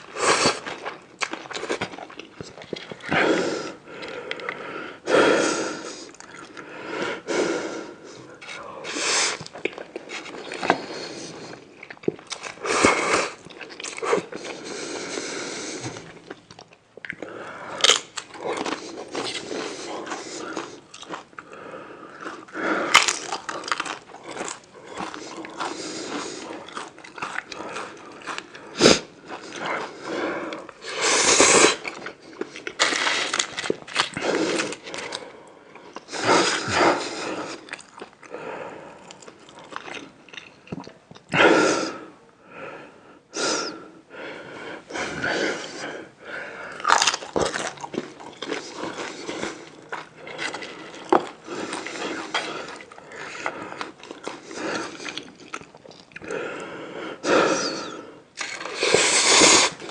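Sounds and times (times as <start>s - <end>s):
person biting and chewing food: 0.0s - 3.2s, 8.4s - 14.7s, 15.8s - 21.6s, 22.2s - 30.0s, 30.6s - 38.3s, 39.0s - 41.3s, 46.7s - 56.4s, 58.3s - 59.9s.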